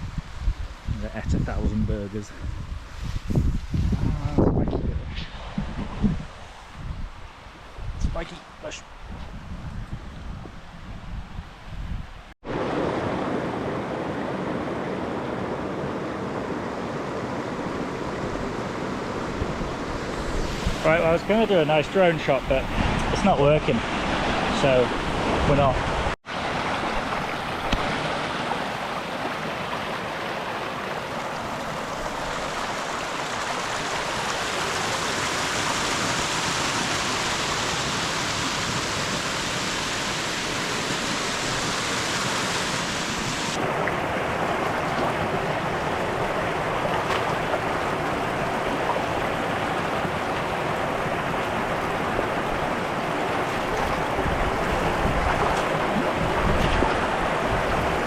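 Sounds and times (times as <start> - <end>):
waterfall splashing into pool: 26.3 - 52.2.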